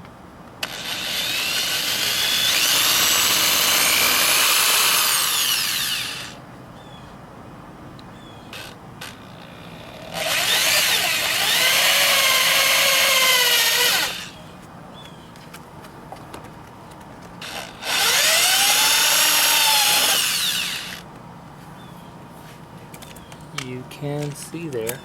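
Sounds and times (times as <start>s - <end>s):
rotary tool whining cutting plastic: 0.6s - 6.4s, 8.6s - 14.4s, 17.4s - 21.0s.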